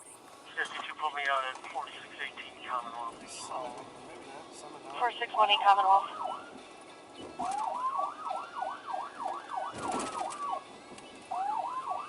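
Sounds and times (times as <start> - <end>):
police siren yelping: 5.2 - 6.6, 7.4 - 10.7, 11.3 - 12.0
rising and falling siren tone: 6.0 - 6.5, 7.5 - 10.6, 11.3 - 12.0.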